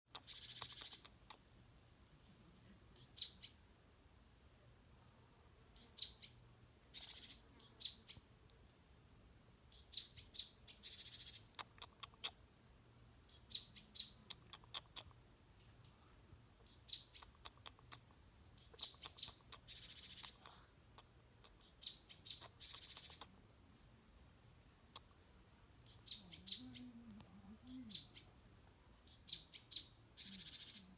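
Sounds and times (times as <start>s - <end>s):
small songbird singing: 0.1s - 1.5s, 2.9s - 3.7s, 5.7s - 8.4s, 9.7s - 12.4s, 13.2s - 15.2s, 16.6s - 23.4s, 24.8s - 30.9s.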